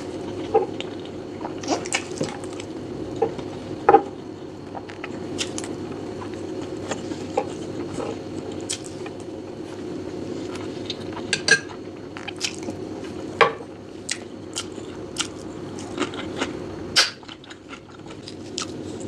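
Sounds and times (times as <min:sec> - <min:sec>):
steady low hum: 0:00.0 - 0:19.0
wet mouth chewing sounds: 0:14.0 - 0:19.0.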